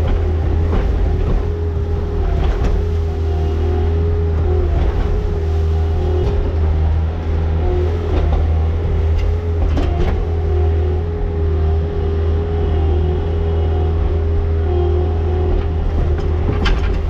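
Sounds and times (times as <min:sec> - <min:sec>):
engine running steadily: 0:00.0 - 0:17.0.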